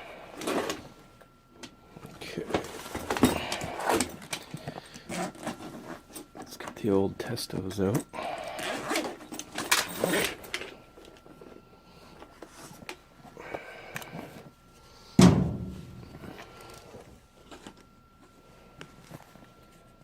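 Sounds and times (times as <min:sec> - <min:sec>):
faint high whine: 0:00.0 - 0:20.0
tools rustling and clattering: 0:02.1 - 0:13.4, 0:15.2 - 0:18.3
sharp loud thunk: 0:15.2 - 0:15.7.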